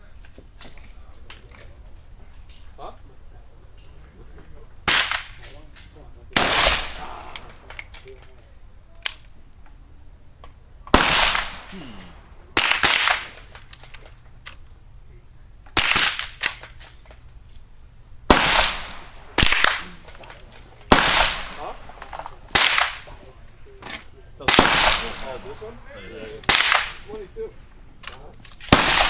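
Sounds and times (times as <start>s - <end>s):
rifle shots echoing: 4.8s - 5.5s, 6.3s - 7.9s, 10.9s - 14.0s, 15.7s - 17.0s, 18.3s - 23.4s, 24.4s - 25.8s, 26.4s - 27.2s, 28.6s - 29.0s.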